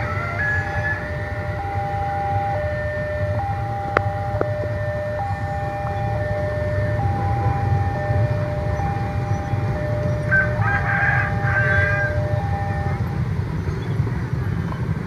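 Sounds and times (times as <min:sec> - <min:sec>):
level crossing two-tone alarm: 0:00.0 - 0:13.3
steady low rumble: 0:00.0 - 0:15.0.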